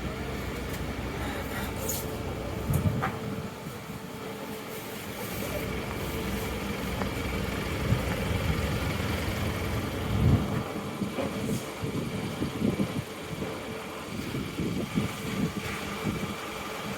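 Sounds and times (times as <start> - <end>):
air conditioner units humming: 0.0 - 16.9
low rumble: 5.6 - 11.2.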